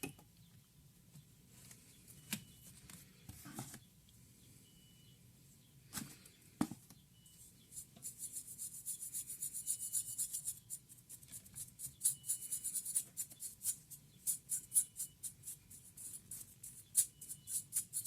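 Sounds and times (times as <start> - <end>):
scrubbing strokes on laptop parts: 7.5 - 18.0.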